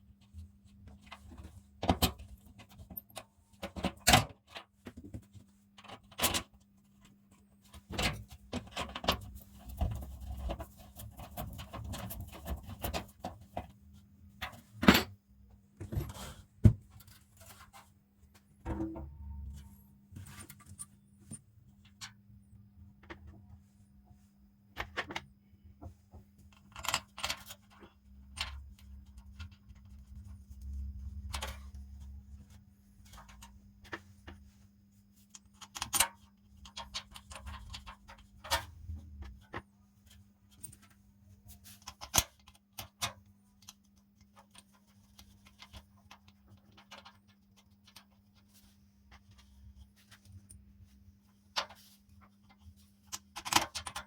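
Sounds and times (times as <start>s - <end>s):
faint steady hum: 0.0s - 54.0s.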